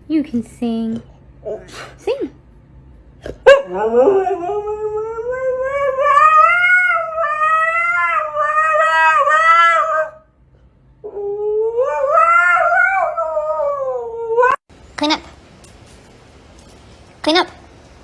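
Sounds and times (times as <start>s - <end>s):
dog howling: 3.5s - 10.2s, 11.0s - 14.6s.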